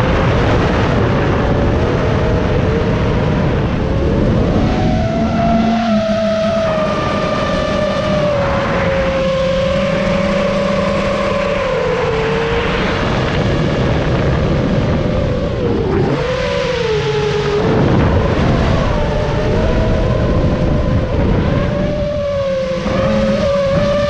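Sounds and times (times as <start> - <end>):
propeller wash rushing: 1.2 - 24.0
drone motors whining: 1.5 - 24.0.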